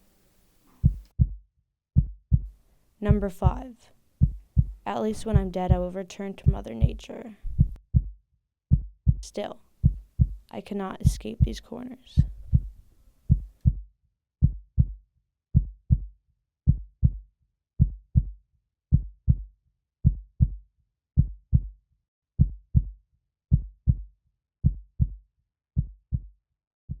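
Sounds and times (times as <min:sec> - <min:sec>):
heartbeat thumps: 0:00.7 - 0:01.3, 0:02.0 - 0:13.8, 0:14.4 - 0:15.0.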